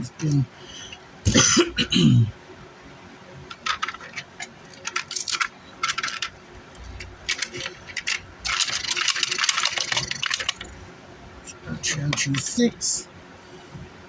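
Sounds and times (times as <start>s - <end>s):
transistors clicking and rattling: 3.5s - 10.9s, 11.8s - 12.8s.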